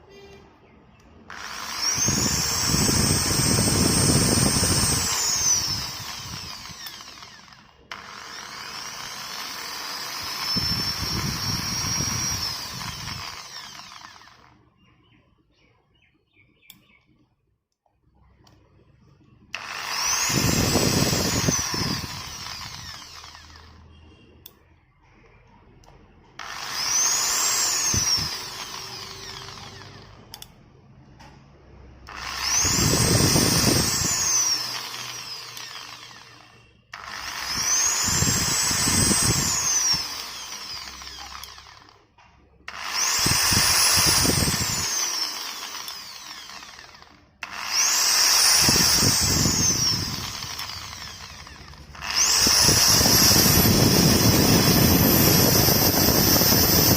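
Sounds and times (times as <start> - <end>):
electric drill motor whine: 1.3 - 14.6, 19.5 - 24.1, 26.4 - 30.5, 32.1 - 56.9.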